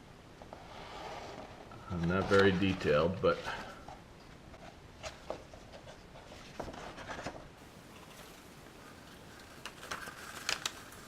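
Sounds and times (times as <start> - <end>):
paper booklet being leafed through: 1.9 - 3.7, 8.2 - 11.0.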